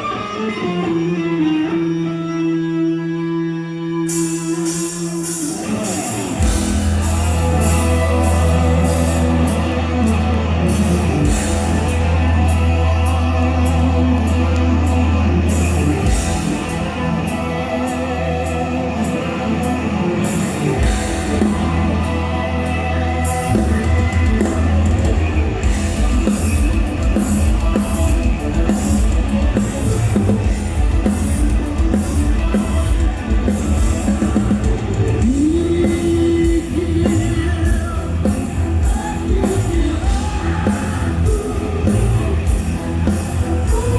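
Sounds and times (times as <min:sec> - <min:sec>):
bass and guitar chords: 0:00.0 - 0:43.9
drum kit beat: 0:05.2 - 0:15.0, 0:23.4 - 0:43.9
person singing: 0:31.9 - 0:43.9.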